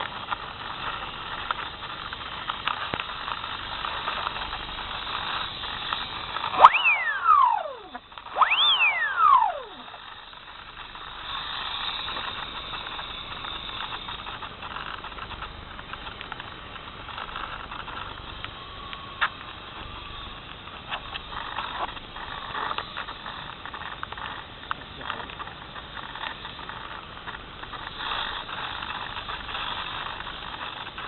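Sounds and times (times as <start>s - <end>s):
electric motor whining: 3.6s - 14.3s.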